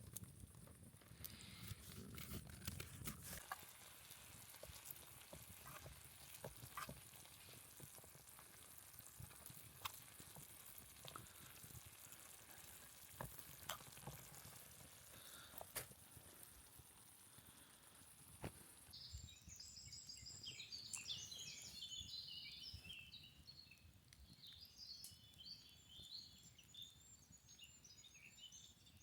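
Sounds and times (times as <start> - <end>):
campfire crackling: 0.0 - 21.7.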